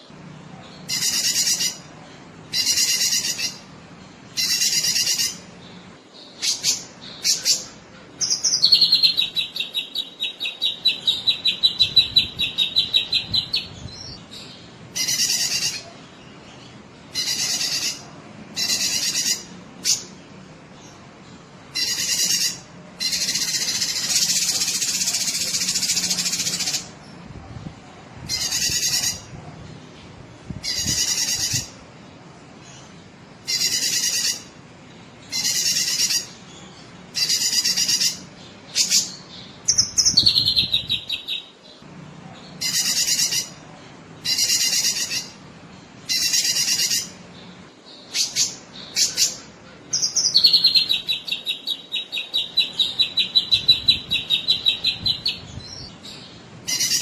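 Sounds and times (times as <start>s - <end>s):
rapid rattling bird trills: 0.8s - 1.9s, 2.5s - 3.7s, 4.3s - 16.0s, 17.1s - 20.2s, 21.7s - 27.0s, 30.6s - 31.8s, 33.4s - 34.6s, 35.3s - 36.5s, 37.1s - 41.5s, 42.6s - 43.6s, 44.2s - 45.4s, 46.0s - 57.0s
songbird singing buzzy notes: 2.5s - 27.3s, 32.6s - 41.9s, 44.2s - 57.0s.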